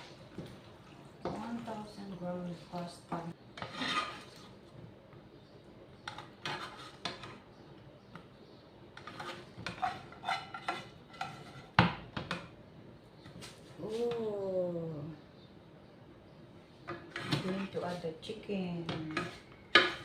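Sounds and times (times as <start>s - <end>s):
utensil scraping against pan: 3.5s - 4.6s, 6.0s - 7.5s, 8.9s - 11.8s, 16.9s - 18.3s, 18.9s - 20.0s.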